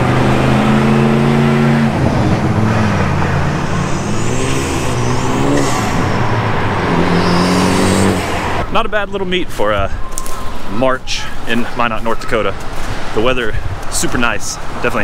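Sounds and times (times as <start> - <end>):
car engine revving: 0.0 - 8.7.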